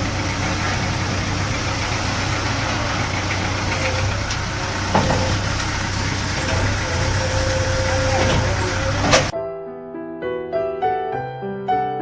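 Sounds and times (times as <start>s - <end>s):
heavy diesel engine running: 0.0s - 9.3s.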